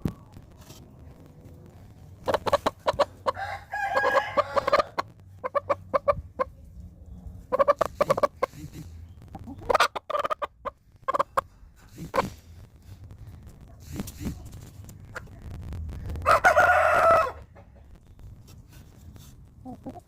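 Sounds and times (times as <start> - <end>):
hen clucking: 2.2 - 12.4, 16.2 - 18.1, 19.6 - 20.0.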